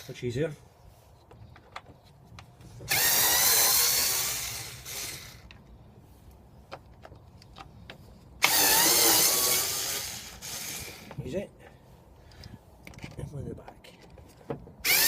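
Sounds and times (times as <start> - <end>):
cordless drill whirring: 2.8 - 5.5, 8.4 - 11.2.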